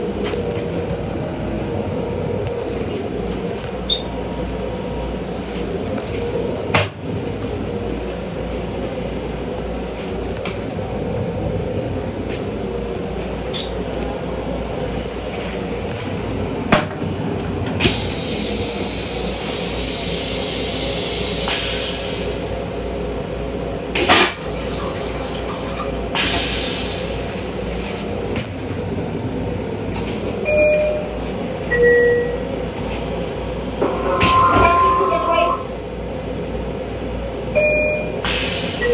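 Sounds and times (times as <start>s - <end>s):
electric train rumbling: 0.0s - 38.9s
short electronic tones: 33.8s - 35.7s.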